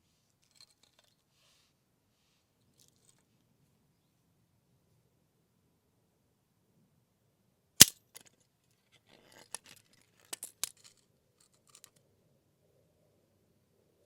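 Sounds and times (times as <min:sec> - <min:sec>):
small clicks and rattles: 0:09.1 - 0:12.0.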